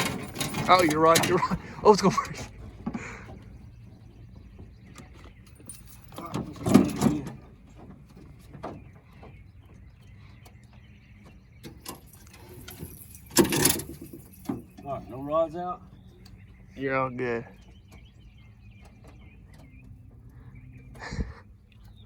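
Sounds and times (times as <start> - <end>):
rattling clunk: 0.0 - 16.6
boat and gear knocking and scraping: 0.0 - 22.0.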